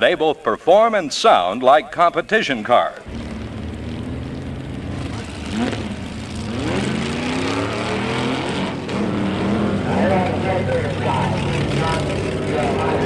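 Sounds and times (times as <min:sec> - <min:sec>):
car engines revving: 0:03.0 - 0:13.0.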